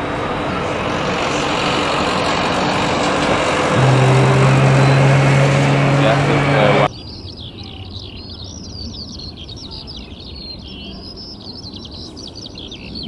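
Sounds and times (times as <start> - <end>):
jet engines roaring: 0.0 - 6.9.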